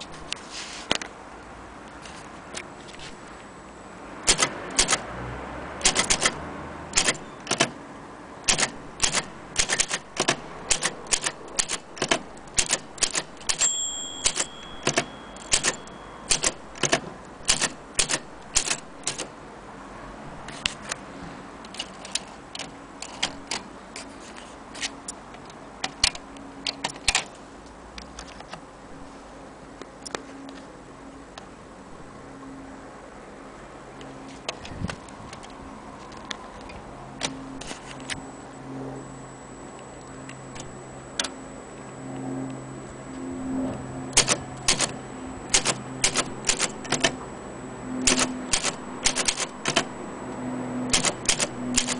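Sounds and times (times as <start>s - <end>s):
typewriter keys clacking: 4.3s - 5.0s, 5.8s - 6.4s, 7.0s - 7.7s, 8.5s - 19.3s, 44.2s - 44.9s, 45.5s - 47.2s, 48.1s - 49.9s, 50.9s - 51.9s
typewriter bell ringing: 13.1s - 16.6s.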